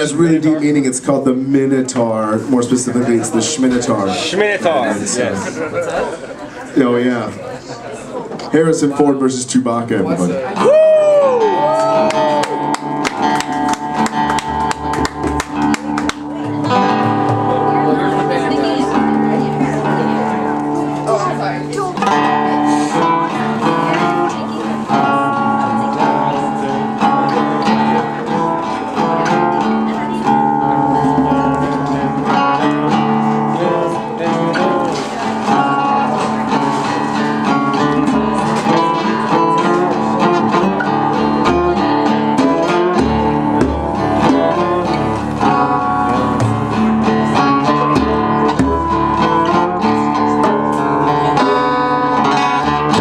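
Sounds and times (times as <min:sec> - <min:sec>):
strummed acoustic guitar: 0:08.3 - 0:53.0
bass notes: 0:11.8 - 0:53.0.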